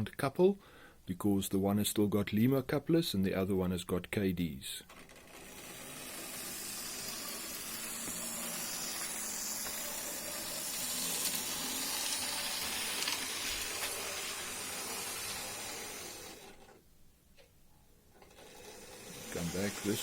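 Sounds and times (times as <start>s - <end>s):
model locomotives running on track: 4.9s - 16.8s, 18.3s - 20.0s.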